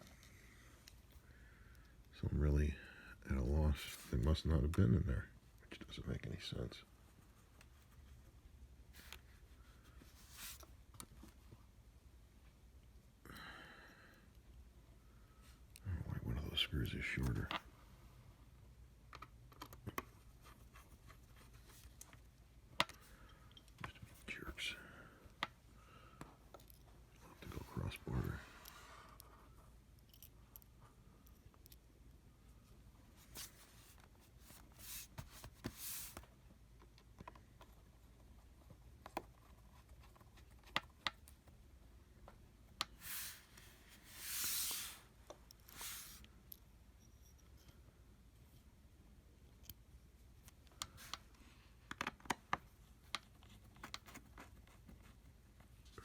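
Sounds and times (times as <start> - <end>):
small screws clicking and tapping: 26.2 - 26.9, 29.9 - 31.9
small parts and screws clicking: 26.4 - 27.2, 27.9 - 31.9.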